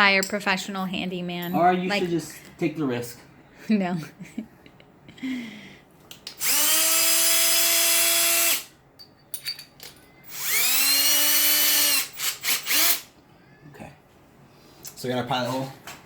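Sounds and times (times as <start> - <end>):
power drill whine: 6.4 - 8.7, 10.3 - 13.1.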